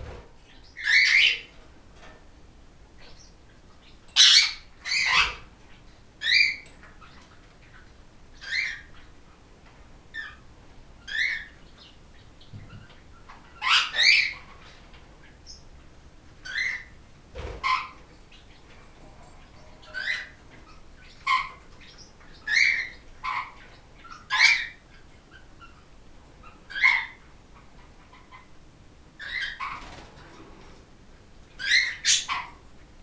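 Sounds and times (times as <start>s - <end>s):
parrots calling: 0.7s - 1.5s, 4.1s - 5.5s, 6.2s - 9.2s, 11.0s - 12.0s, 12.7s - 15.7s, 16.4s - 18.8s, 19.4s - 28.6s, 29.2s - 30.0s, 31.5s - 32.6s.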